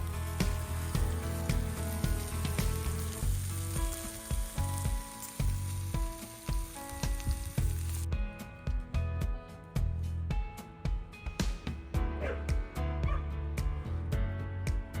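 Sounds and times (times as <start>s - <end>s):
food sizzling in a frying pan: 0.0s - 8.1s
background music with steady beat: 0.0s - 15.0s.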